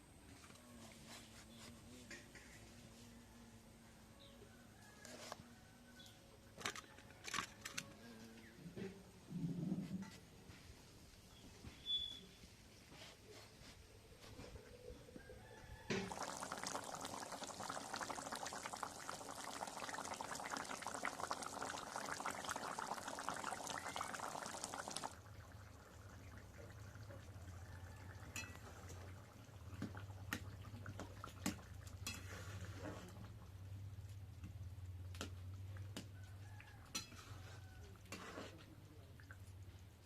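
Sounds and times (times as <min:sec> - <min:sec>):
liquid pouring into a pot: 0:15.9 - 0:33.5
utensils clinking on a pot: 0:28.3 - 0:28.7, 0:32.0 - 0:32.5, 0:36.9 - 0:37.3.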